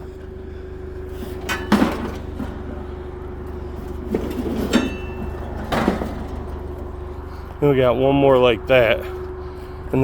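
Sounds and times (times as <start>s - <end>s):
engine idling: 0.0s - 10.0s
metallic clanking and rattling: 1.2s - 7.1s.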